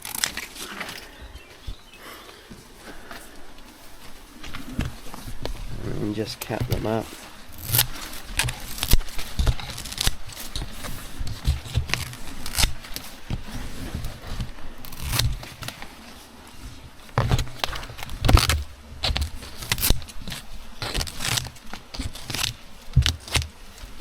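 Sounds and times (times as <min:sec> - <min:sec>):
scissors snipping plant fronds: 0:00.0 - 0:01.8, 0:06.2 - 0:16.0, 0:17.1 - 0:24.0.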